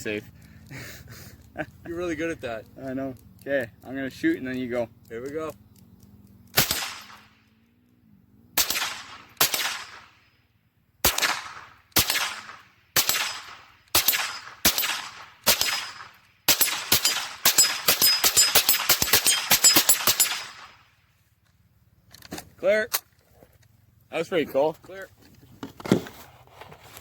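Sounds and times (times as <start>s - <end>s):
gunshots: 6.5s - 7.5s, 8.6s - 10.2s, 11.0s - 20.9s.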